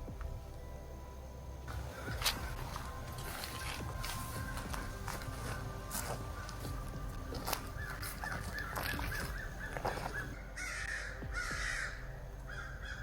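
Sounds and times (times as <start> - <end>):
crow cawing: 1.7 - 2.9, 7.5 - 13.0.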